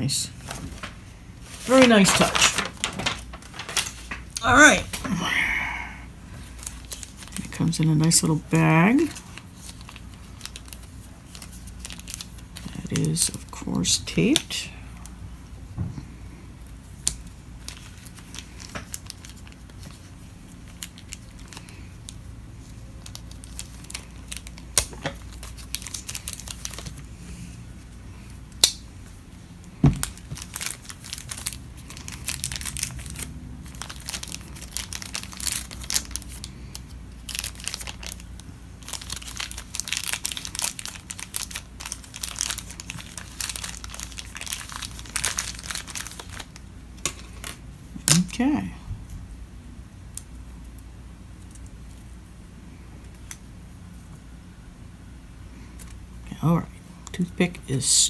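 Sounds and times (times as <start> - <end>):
plastic bag crinkling and tearing: 0.4 - 5.1, 6.4 - 15.1, 16.9 - 28.8, 29.8 - 48.6.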